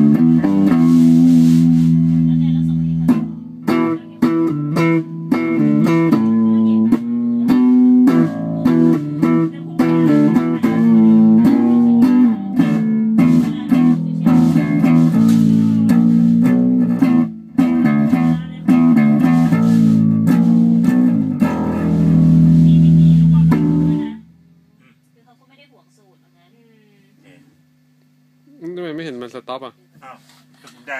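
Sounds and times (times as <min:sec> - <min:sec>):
electric bass plucked notes: 0:00.0 - 0:24.8.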